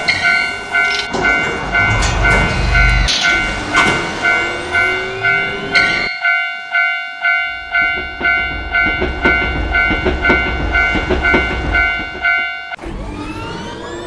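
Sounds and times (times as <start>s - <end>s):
train rumbling and clattering: 0.0s - 6.3s, 7.2s - 14.0s
level-crossing warning bell: 0.0s - 14.0s
rising whine: 0.7s - 6.4s.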